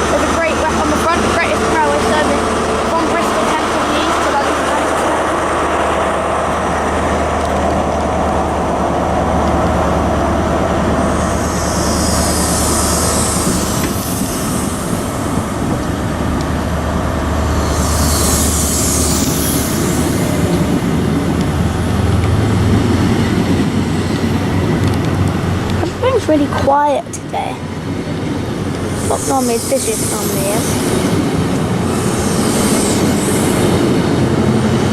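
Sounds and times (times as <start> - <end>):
diesel train engine hum: 0.0 - 34.9
loud high hiss bursts: 11.0 - 15.7, 17.5 - 21.1, 28.8 - 34.0.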